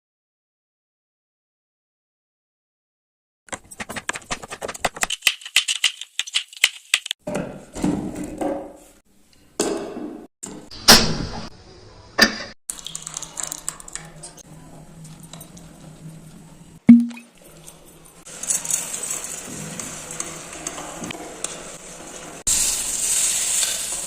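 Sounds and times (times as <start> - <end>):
small clicks and rattles: 12.7 - 14.4.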